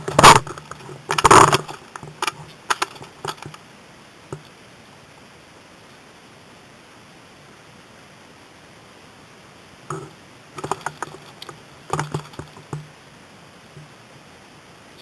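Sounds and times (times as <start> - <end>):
low hum: 0.0 - 15.0
steady hiss: 0.0 - 15.0
airsoft gun clicks and knocks: 9.9 - 12.9.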